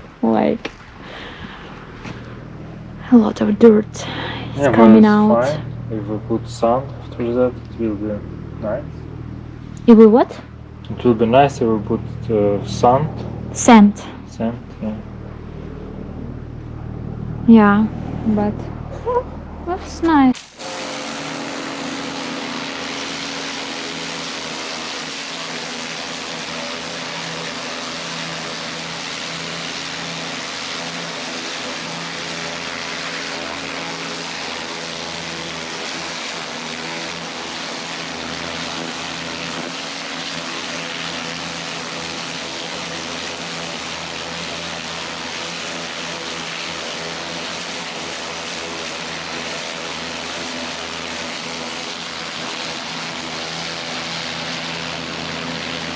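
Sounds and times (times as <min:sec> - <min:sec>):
pressure washer pump hum: 0:00.0 - 0:55.9
high-pressure water jet hissing: 0:20.0 - 0:55.9.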